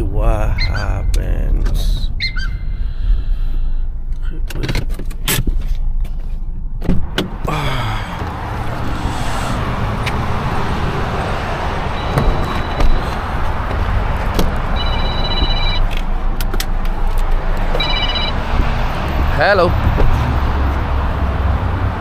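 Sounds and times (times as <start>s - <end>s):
vehicle running: 0.0s - 22.0s
high electronic beeping chime: 12.0s - 13.1s, 14.8s - 15.9s, 17.8s - 18.4s.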